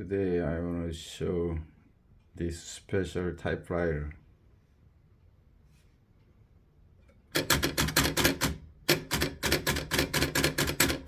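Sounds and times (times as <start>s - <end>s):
manual typewriter typing: 7.3s - 11.0s.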